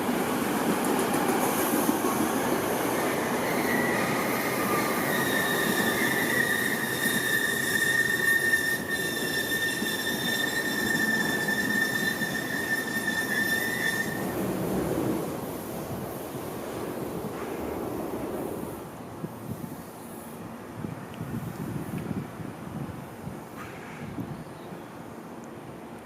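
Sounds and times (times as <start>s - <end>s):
train running rumble: 0.0s - 19.0s
high-pitched brake and wheel squeal: 3.1s - 14.5s.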